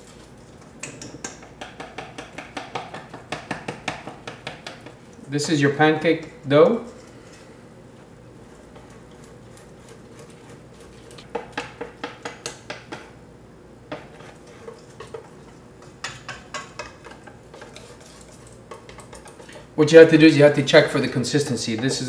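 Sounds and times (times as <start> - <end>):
utensil clinking against bowl: 13.9 - 19.7.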